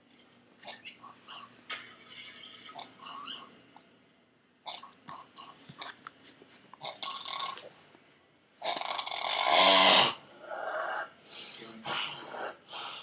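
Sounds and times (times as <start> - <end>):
man snoring loudly: 8.8 - 10.2.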